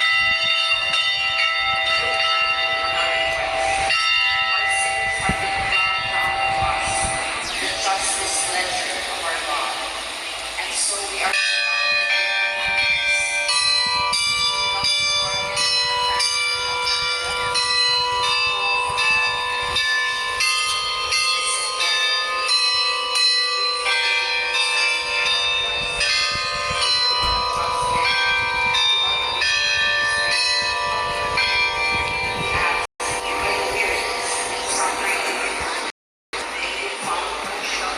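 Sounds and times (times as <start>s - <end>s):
carillon bells playing a tune: 0.0s - 8.7s, 11.3s - 35.4s.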